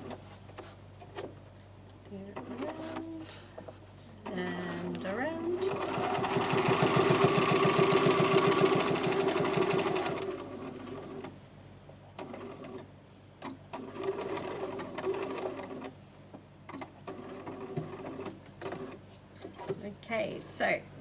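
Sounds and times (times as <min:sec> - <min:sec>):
sewing machine stitching: 0:04.2 - 0:11.3, 0:12.2 - 0:12.9, 0:13.7 - 0:16.0, 0:16.8 - 0:19.0.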